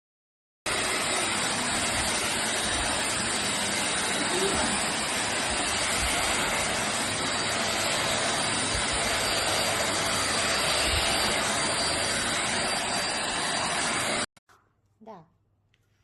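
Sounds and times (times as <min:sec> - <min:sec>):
vacuum cleaner running: 0:00.7 - 0:14.3.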